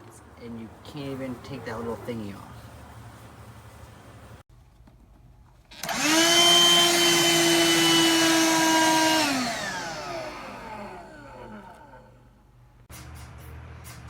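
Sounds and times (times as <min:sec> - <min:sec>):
handheld vacuum motor whine: 0:05.7 - 0:12.2.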